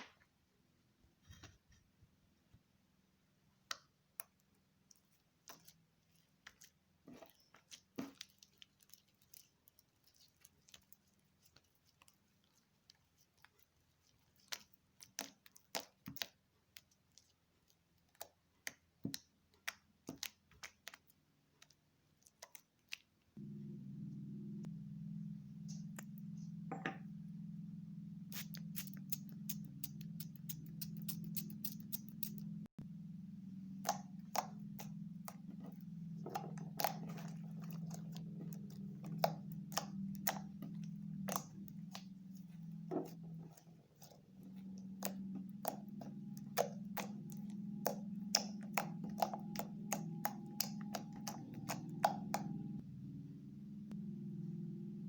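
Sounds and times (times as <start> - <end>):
slime squishing wet clicks: 3.6 - 23.2, 33.8 - 52.8
low hum: 23.4 - 55.0.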